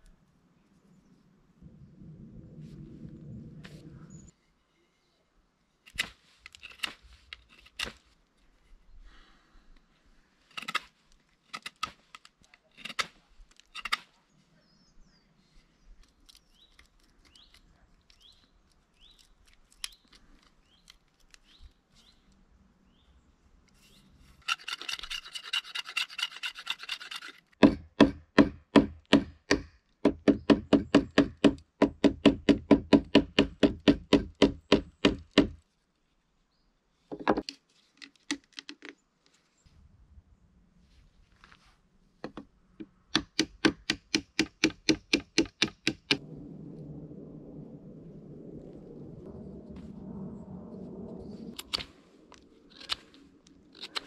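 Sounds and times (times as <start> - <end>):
knocks and scrapes: 23.7 - 27.6
hand saw cutting wood: 24.4 - 28.2.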